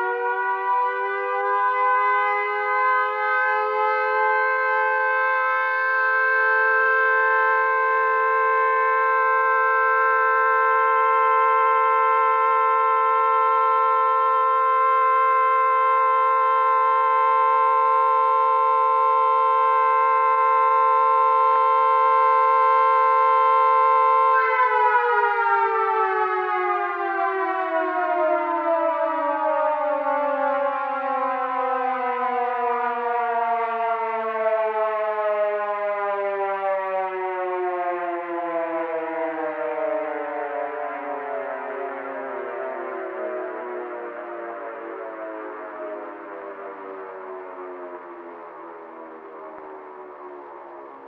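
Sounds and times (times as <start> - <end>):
air-raid siren wailing: 0.0 - 51.0.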